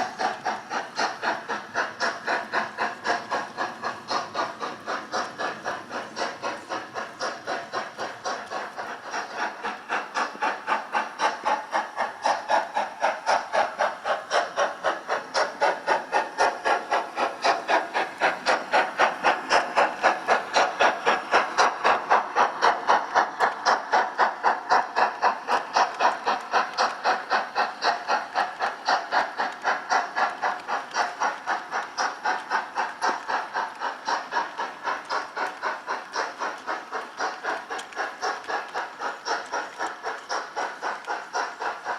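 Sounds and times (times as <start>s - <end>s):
steam locomotive exhaust chuffs: 0.0s - 41.9s.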